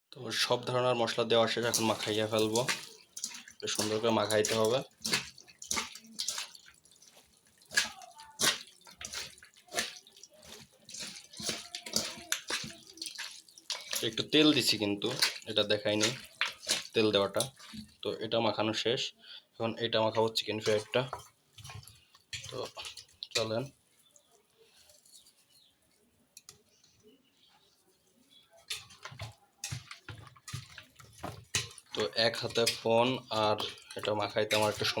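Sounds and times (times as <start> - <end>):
wet squelches of kneading meat: 0.2 - 18.8, 19.4 - 35.0
hands mixing raw chicken: 0.2 - 19.0, 19.6 - 35.0.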